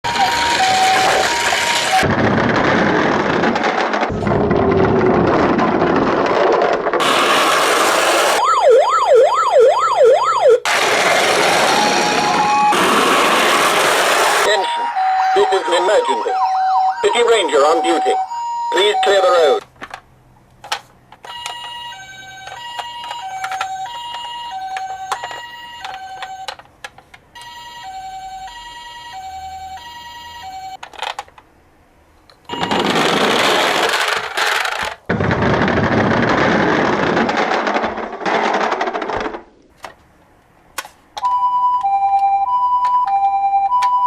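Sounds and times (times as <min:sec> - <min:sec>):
toy two-tone siren: 0:00.0 - 0:02.0, 0:08.1 - 0:10.8, 0:11.4 - 0:19.6, 0:21.2 - 0:26.5, 0:27.4 - 0:30.8, 0:32.5 - 0:33.1, 0:41.2 - 0:44.0.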